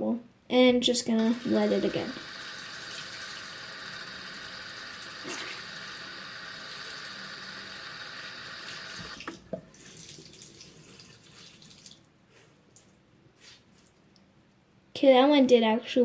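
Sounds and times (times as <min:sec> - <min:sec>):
water running from a tap: 0:01.2 - 0:12.1
tap shutting off knock: 0:08.9 - 0:09.7.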